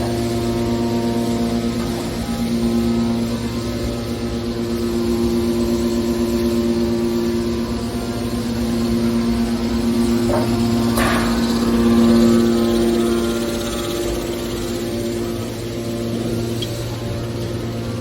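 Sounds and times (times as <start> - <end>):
baler machinery humming: 0.0 - 18.0.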